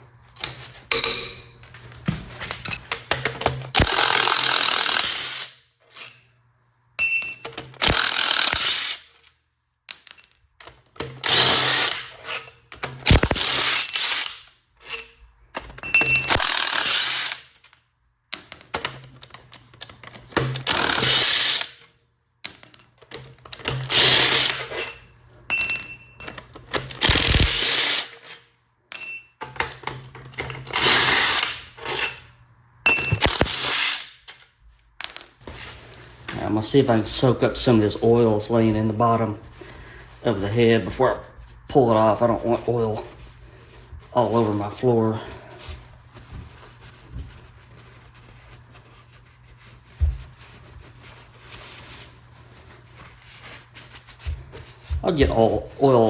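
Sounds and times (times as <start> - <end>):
handheld power tool running: 3.8 - 5.6, 7.8 - 9.1, 11.2 - 12.3, 13.1 - 14.4, 16.0 - 17.6, 20.6 - 21.8, 23.8 - 24.8, 27.0 - 28.3, 30.7 - 32.0, 33.0 - 34.2.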